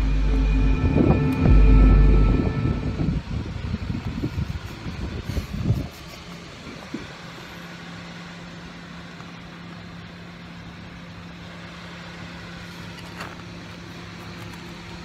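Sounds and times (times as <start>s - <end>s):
car engine running: 0.0s - 5.2s.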